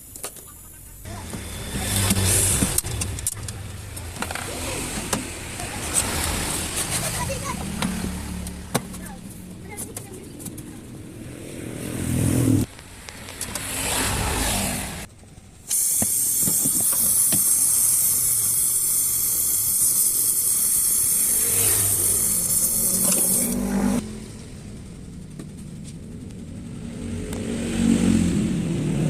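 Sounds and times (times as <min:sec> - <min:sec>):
compressed gas hissing through tubing: 0:15.6 - 0:23.6.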